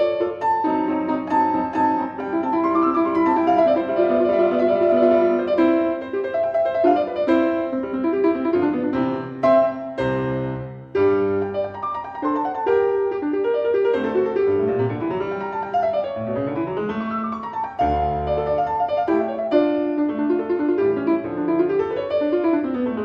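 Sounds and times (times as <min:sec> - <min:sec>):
piano music: 0:00.0 - 0:23.0.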